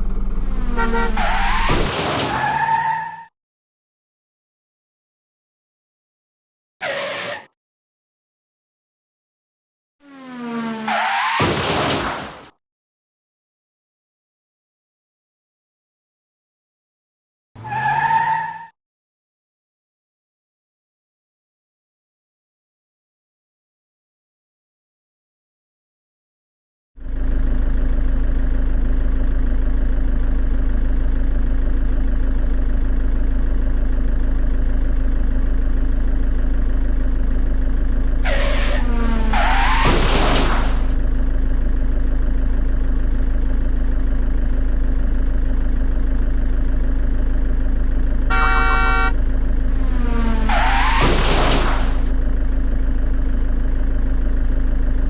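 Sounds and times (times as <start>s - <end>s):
vehicle engine drone: 0.0s - 3.3s, 10.0s - 11.2s, 27.0s - 55.0s
car horn honk: 0.5s - 1.7s, 48.3s - 49.2s.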